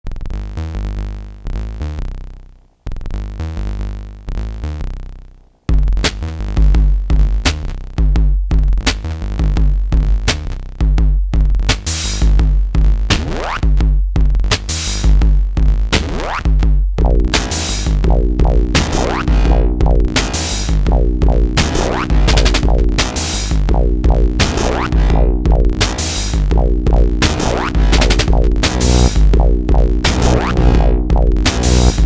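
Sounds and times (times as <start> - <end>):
electronic music with heavy bass: 11.8 - 32.0.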